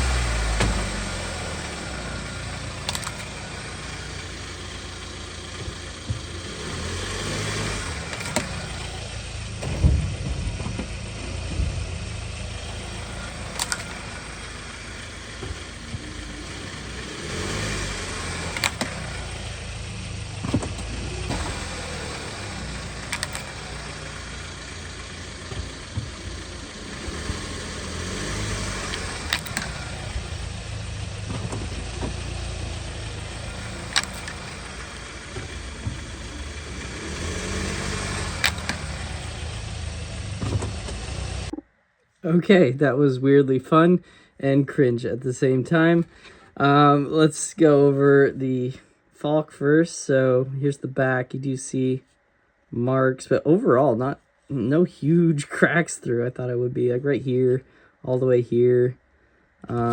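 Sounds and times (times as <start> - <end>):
car engine running at low speed: 0.0 - 59.9
sharp clicks: 2.2 - 4.1, 5.6 - 9.0, 12.6 - 14.5, 15.3 - 19.4, 20.4 - 24.3, 25.4 - 39.3.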